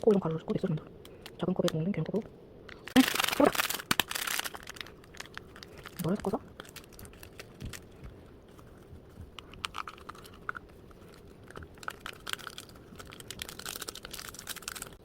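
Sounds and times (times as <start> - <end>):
stirring in small cup: 7.0 - 15.0.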